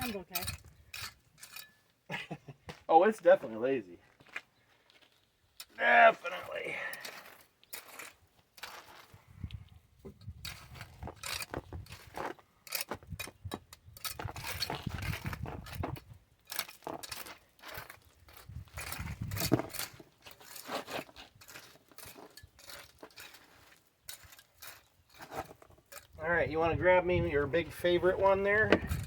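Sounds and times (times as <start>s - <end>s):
trowel scraping wet concrete: 5.8s - 9.2s, 10.4s - 26.2s.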